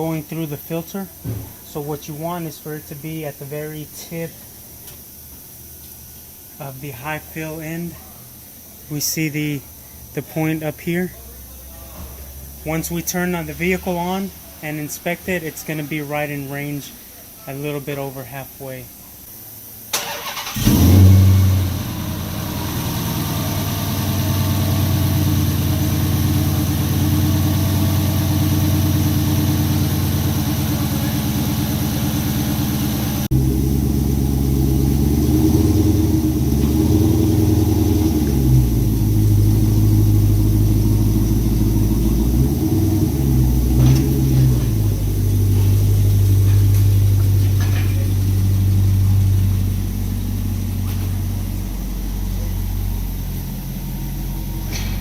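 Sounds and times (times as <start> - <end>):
car engine idling: 19.5 - 55.0.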